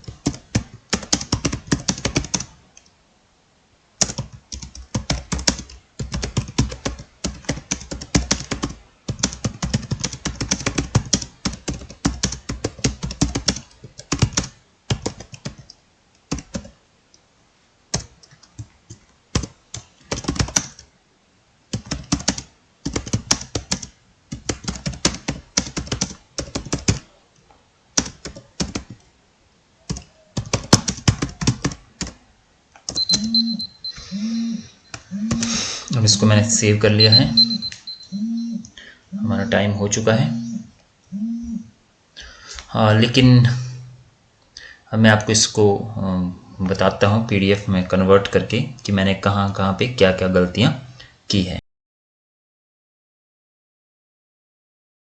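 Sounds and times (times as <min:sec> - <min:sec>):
fast typing on keyboard: 0:00.0 - 0:02.5, 0:04.0 - 0:15.7, 0:16.3 - 0:16.8, 0:17.9 - 0:20.8, 0:21.7 - 0:27.1, 0:28.0 - 0:29.0, 0:29.9 - 0:32.2, 0:32.9 - 0:33.6, 0:34.9 - 0:35.6.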